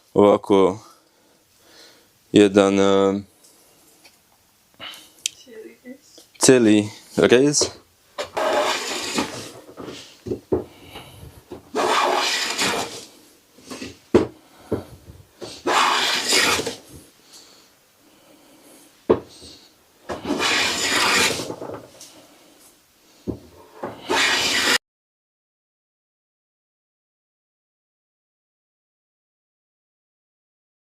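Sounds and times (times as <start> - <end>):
hand plane cutting wood: 8.2 - 10.1, 11.5 - 14.0, 15.4 - 16.8, 20.1 - 21.7, 23.8 - 24.8.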